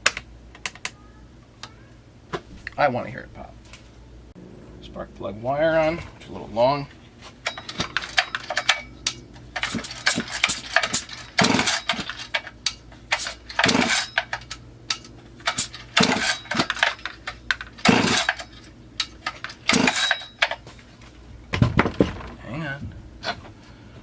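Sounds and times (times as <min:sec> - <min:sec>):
handling clicks and knocks: 0:07.2 - 0:22.4
chainsaw recoil starter whirring: 0:09.5 - 0:14.6, 0:15.4 - 0:20.6.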